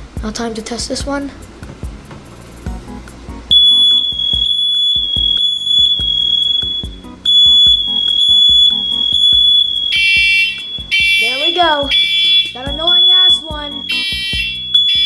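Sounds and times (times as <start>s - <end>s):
harsh buzzy alarm tone: 2.6s - 15.0s
smoke alarm high-pitched tone: 3.3s - 15.0s.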